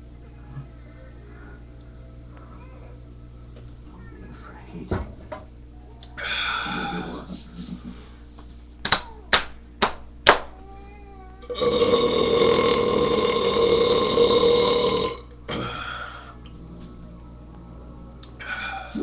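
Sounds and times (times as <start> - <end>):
short burp-like sound: 11.5 - 15.8
long loud burp: 11.5 - 16.0.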